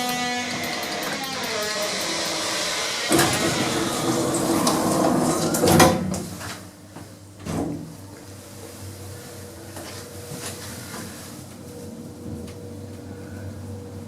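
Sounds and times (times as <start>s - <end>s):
lift doors sliding: 0.5s - 6.6s.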